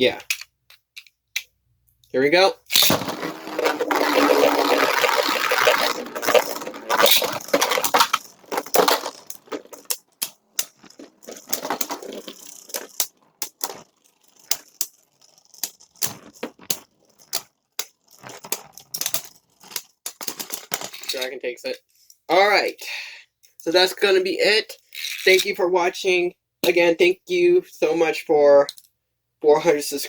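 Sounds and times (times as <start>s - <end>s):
spinning tops colliding clacks: 2.7s - 21.3s
spinning tops scraping: 2.7s - 21.3s.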